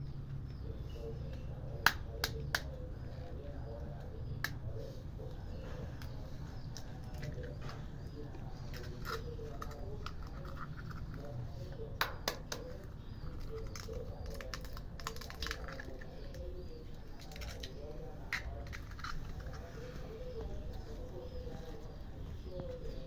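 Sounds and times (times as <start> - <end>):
pigeons cooing: 0.0 - 23.0
cats eating clicks and taps: 1.3 - 3.3, 5.6 - 20.5.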